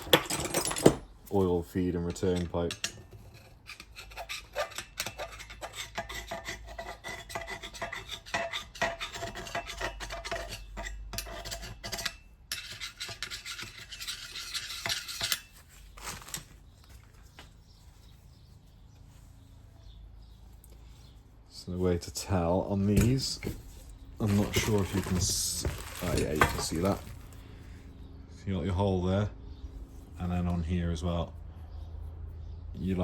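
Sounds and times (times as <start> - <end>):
metal parts clinking: 0.0 - 1.2, 24.2 - 27.4
steady metal scraping: 2.2 - 16.4, 21.0 - 27.7.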